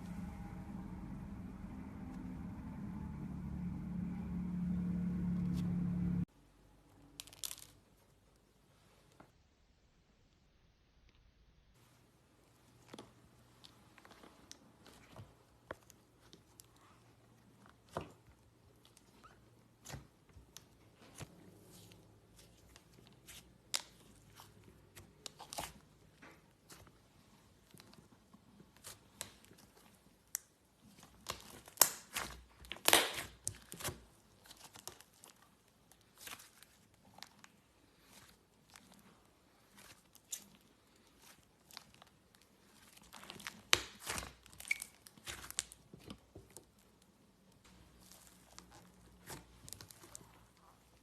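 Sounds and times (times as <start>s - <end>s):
slime clicking and crackling: 28.7s - 47.1s.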